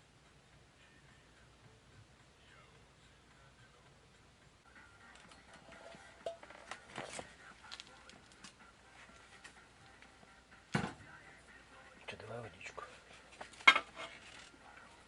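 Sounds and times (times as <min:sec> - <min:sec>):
rustling: 0:12.8 - 0:14.9.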